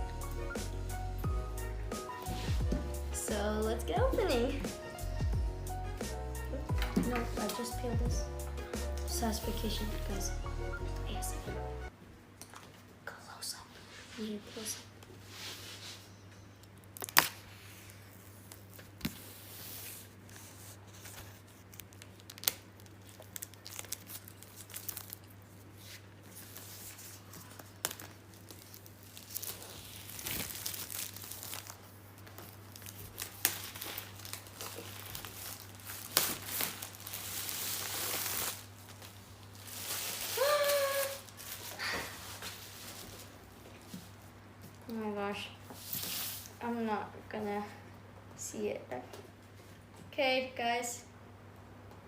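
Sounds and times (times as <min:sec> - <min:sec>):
plastic film crinkling and tearing: 0:16.7 - 0:43.4.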